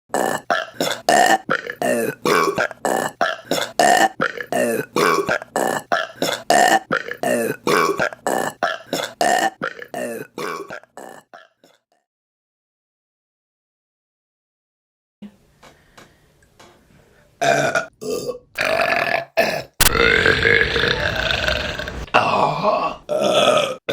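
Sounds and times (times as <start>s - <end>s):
loud gliding burps: 0.1s - 11.8s, 17.4s - 23.9s.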